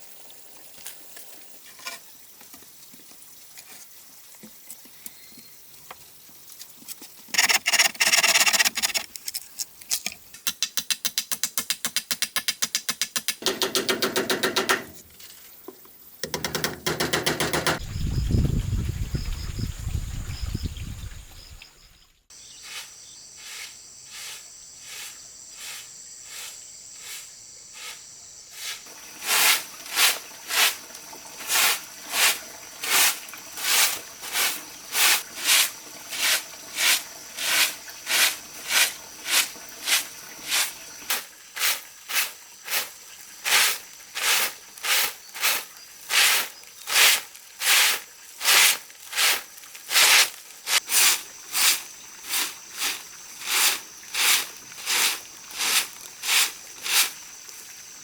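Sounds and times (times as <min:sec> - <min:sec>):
hand tool rasping wood: 0:07.4 - 0:09.1.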